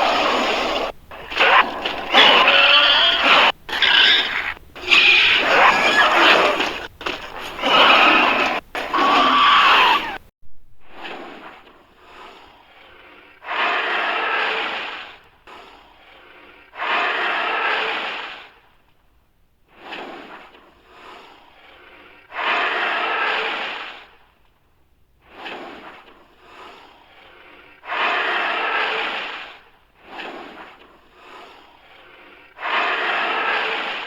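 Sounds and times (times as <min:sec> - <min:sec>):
person making creature call: 0:07.5 - 0:10.2
quiet breaths: 0:10.0 - 0:13.6, 0:14.7 - 0:16.8, 0:19.6 - 0:24.6, 0:25.2 - 0:34.0
harsh breathy snorts: 0:19.7 - 0:24.2, 0:25.3 - 0:34.0.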